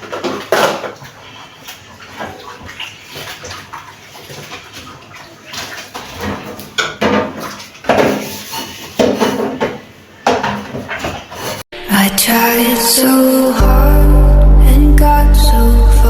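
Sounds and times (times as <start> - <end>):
plastic shelves clattering: 0.0 - 1.1, 6.1 - 11.6.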